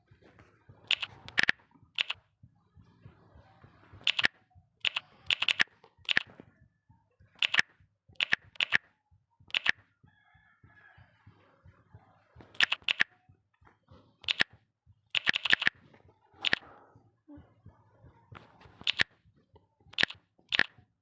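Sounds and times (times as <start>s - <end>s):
sharp clicks or taps: 0.9s - 2.2s, 4.0s - 6.4s, 7.3s - 8.9s, 9.5s - 9.9s, 12.4s - 13.2s, 14.2s - 15.8s, 18.4s - 19.2s, 19.9s - 20.8s.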